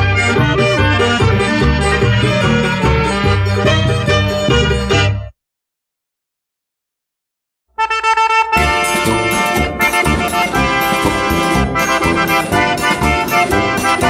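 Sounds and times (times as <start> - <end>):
accordion-led instrumental band: 0.0 - 5.2, 8.4 - 14.0.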